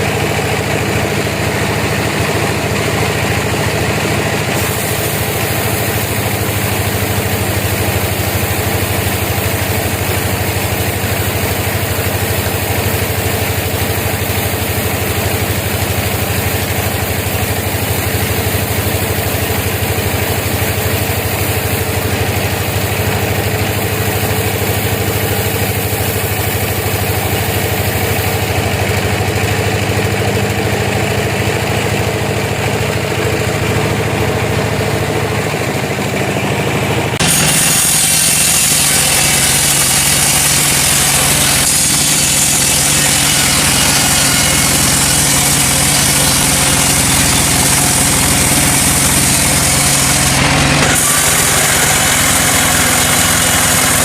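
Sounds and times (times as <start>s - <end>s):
sawmill engine running: 0.0s - 54.0s.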